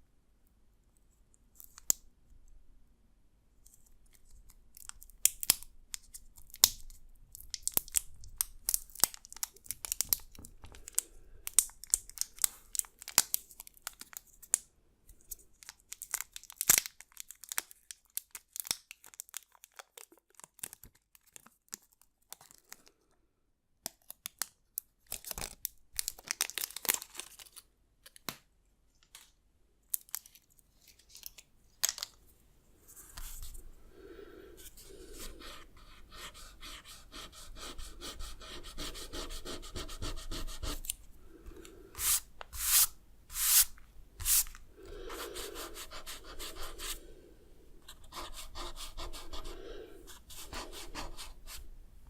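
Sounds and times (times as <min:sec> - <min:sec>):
pencil sketching on paper: 0:35.1 - 0:40.8, 0:45.1 - 0:47.0, 0:47.9 - 0:51.6.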